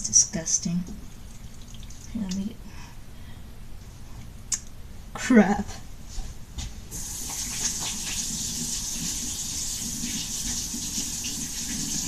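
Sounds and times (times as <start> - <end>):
water tap running: 1.1 - 2.4, 6.9 - 12.0.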